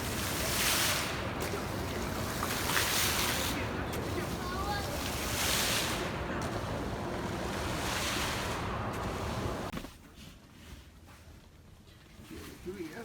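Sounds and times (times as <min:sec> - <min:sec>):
air rushing across microphone: 0:00.0 - 0:09.7.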